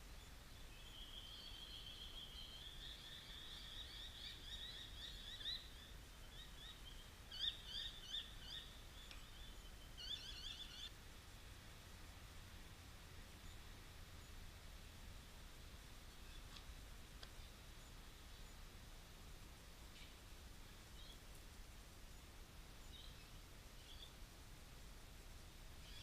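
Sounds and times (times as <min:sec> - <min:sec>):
faint bird chirping: 0:00.0 - 0:11.7, 0:12.6 - 0:15.2, 0:15.8 - 0:18.8, 0:19.8 - 0:24.3, 0:25.7 - 0:26.0.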